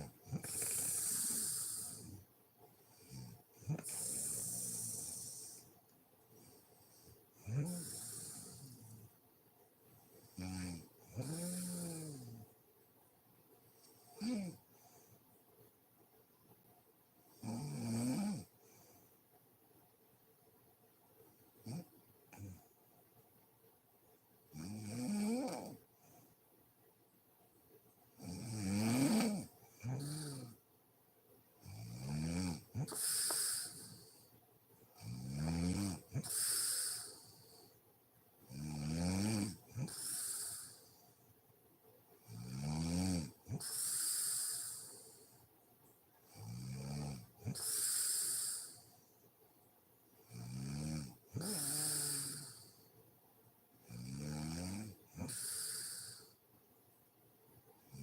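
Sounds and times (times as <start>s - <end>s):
woman snoring: 0.0s - 2.1s, 3.6s - 5.6s, 7.4s - 8.8s, 10.4s - 12.4s, 14.2s - 14.6s, 24.6s - 25.8s, 28.2s - 30.6s, 31.7s - 34.0s, 35.0s - 37.4s, 38.5s - 40.8s, 46.4s - 48.8s, 50.3s - 52.7s, 53.9s - 56.4s.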